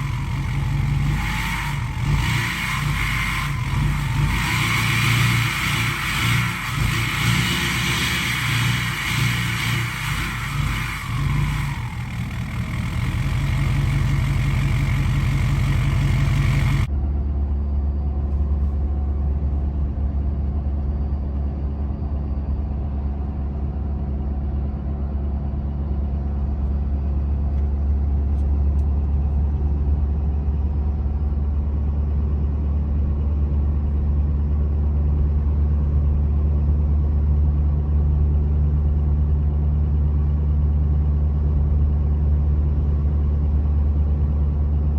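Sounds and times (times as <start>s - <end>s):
diesel engine idling: 0.0s - 16.9s
tire hum: 0.0s - 21.7s
low exhaust drone: 0.0s - 44.9s.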